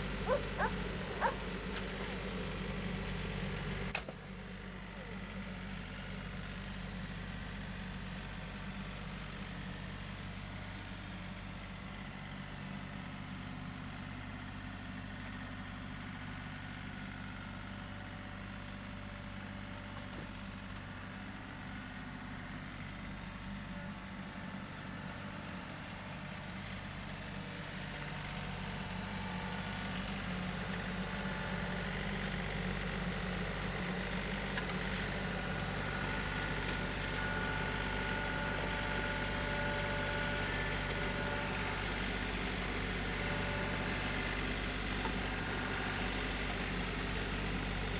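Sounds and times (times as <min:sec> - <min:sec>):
tractor engine running: 0:00.0 - 0:47.9.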